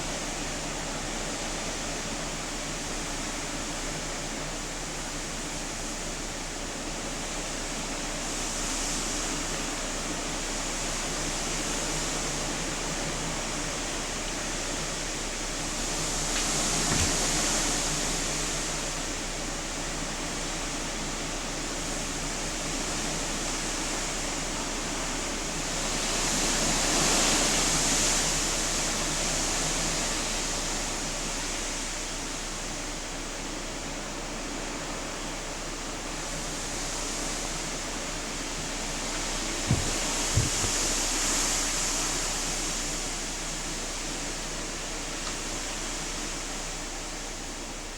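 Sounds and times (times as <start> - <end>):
rain: 0.0 - 47.9
strong wind: 38.1 - 43.6.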